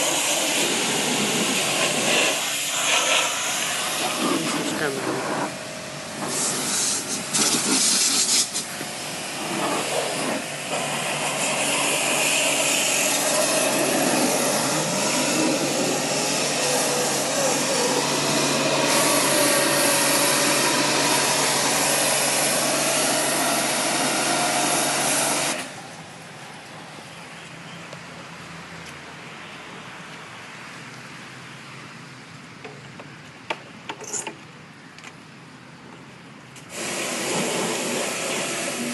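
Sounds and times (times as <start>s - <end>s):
pressure washer spraying water: 0.0s - 25.8s, 36.7s - 38.9s.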